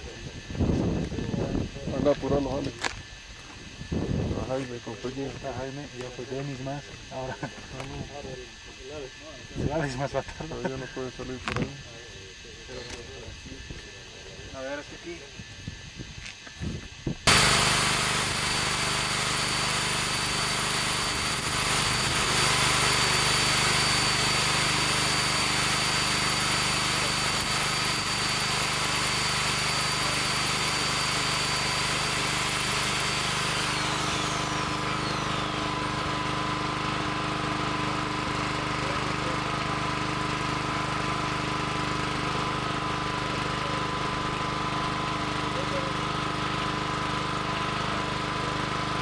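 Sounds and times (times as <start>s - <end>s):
engine running steadily: 16.2s - 49.0s
power drill whining into concrete: 17.2s - 49.0s.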